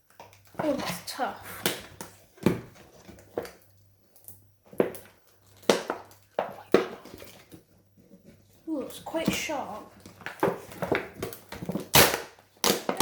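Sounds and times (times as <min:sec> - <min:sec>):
packaging cracking and crinkling: 0:09.9 - 0:13.0.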